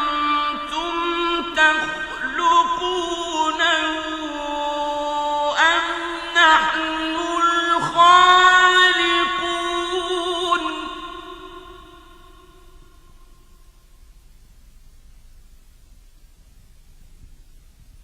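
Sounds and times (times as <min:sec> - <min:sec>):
person chanting melodic recitation: 0:00.0 - 0:13.2.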